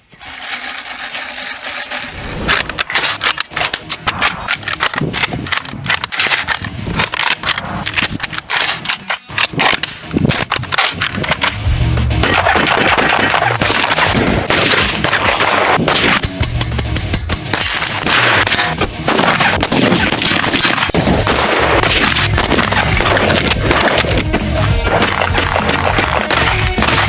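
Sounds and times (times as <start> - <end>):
firearm bolts clacking: 2.5 - 11.6
gunshots: 12.2 - 16.5, 17.4 - 27.0.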